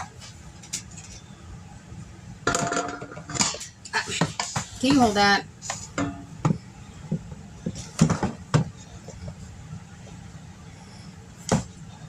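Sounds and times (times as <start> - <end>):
steady low hum: 0.0 - 12.0
kitchen utensils clattering: 2.5 - 6.3.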